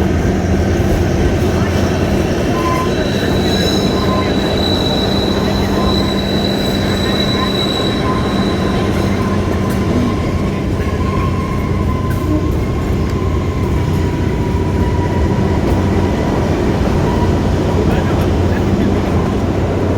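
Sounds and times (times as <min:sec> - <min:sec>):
train wheels rumbling on rails: 0:00.0 - 0:19.9
thin squealing tones: 0:01.8 - 0:17.4.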